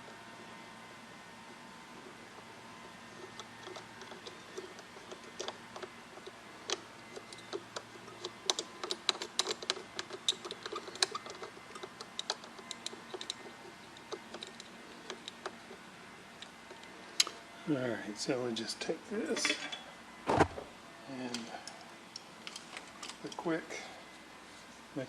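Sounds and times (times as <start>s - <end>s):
small tools tapping on metal: 3.3s - 15.6s.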